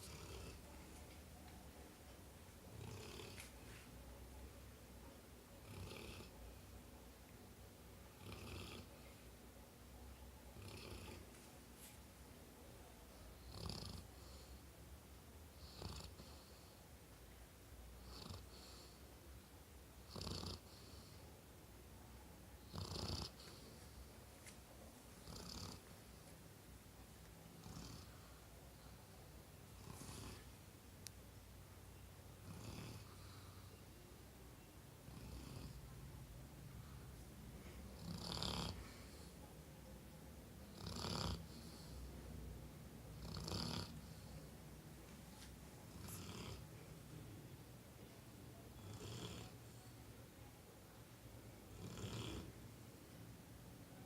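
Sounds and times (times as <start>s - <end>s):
dog snoring: 0.0s - 0.6s, 2.7s - 3.5s, 5.6s - 6.4s, 8.2s - 9.0s, 10.6s - 11.2s, 13.4s - 14.6s, 15.5s - 16.8s, 18.0s - 19.0s, 20.0s - 21.2s, 22.6s - 23.9s, 25.2s - 25.9s, 27.6s - 28.3s, 29.8s - 30.5s, 32.4s - 33.6s, 35.1s - 35.8s, 38.0s - 39.3s, 40.7s - 42.0s, 43.2s - 44.4s, 45.9s - 46.7s, 48.8s - 49.6s, 51.7s - 52.5s.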